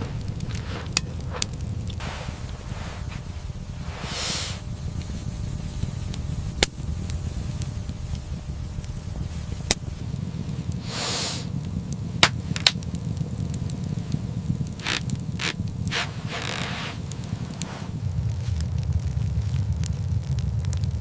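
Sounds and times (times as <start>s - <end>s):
hissing whoosh: 0.0s - 12.5s, 13.4s - 20.0s
low rumble: 0.0s - 21.0s
sharp pops: 12.2s - 12.9s, 14.6s - 17.9s.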